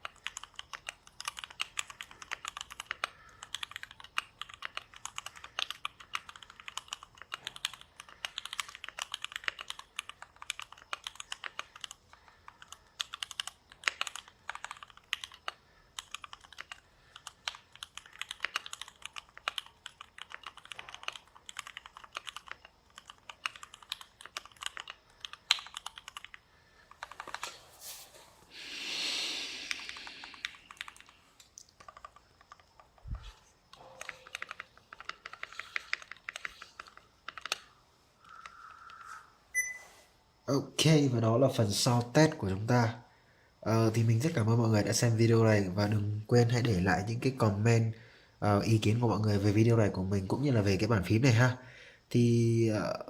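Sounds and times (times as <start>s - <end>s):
mechanical keyboard typing: 0.0s - 27.4s, 29.7s - 33.0s, 33.7s - 37.7s.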